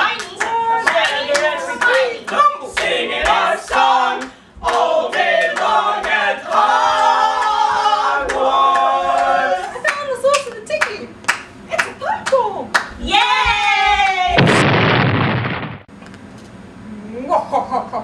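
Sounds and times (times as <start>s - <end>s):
voices singing a cappella: 0.0s - 9.8s
hand claps: 9.9s - 12.9s.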